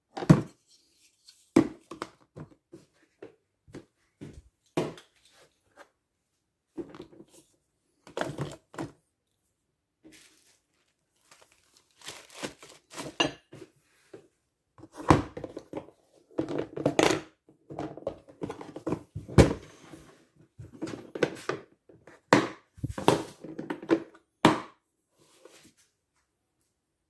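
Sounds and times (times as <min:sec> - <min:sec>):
objects thunking and knocking: 0:00.1 - 0:00.6, 0:08.0 - 0:09.0, 0:14.8 - 0:21.7, 0:22.3 - 0:24.6
rustling: 0:10.1 - 0:13.2.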